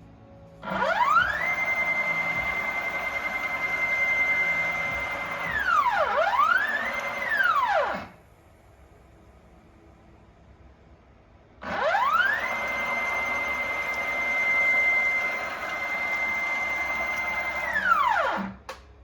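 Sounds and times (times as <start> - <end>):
stepper motor whining: 0.6 - 8.2, 11.6 - 18.5.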